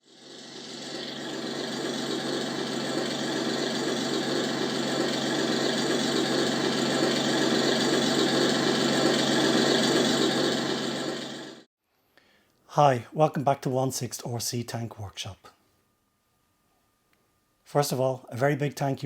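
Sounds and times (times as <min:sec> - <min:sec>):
machine engine running: 0:00.0 - 0:11.7.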